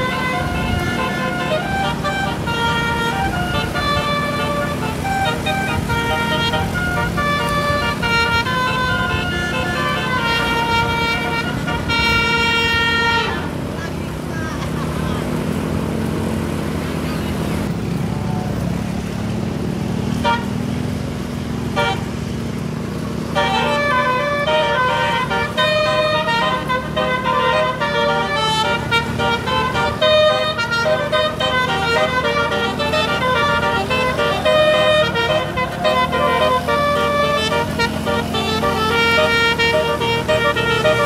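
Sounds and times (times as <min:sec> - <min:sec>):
short horn toots: 0:00.0 - 0:13.5, 0:21.8 - 0:22.2, 0:23.4 - 0:41.0
multi-tone air horn tune: 0:00.0 - 0:13.6, 0:20.2 - 0:20.6, 0:21.7 - 0:22.2, 0:23.3 - 0:41.0
bus engine running: 0:00.0 - 0:41.0.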